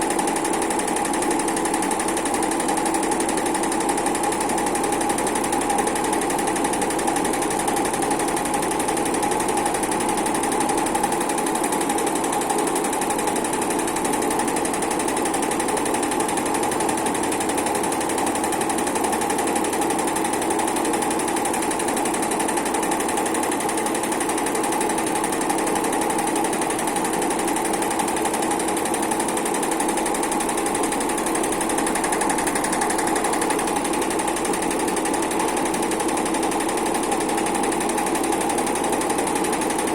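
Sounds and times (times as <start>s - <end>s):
sewing machine stitching: 0.0s - 39.9s.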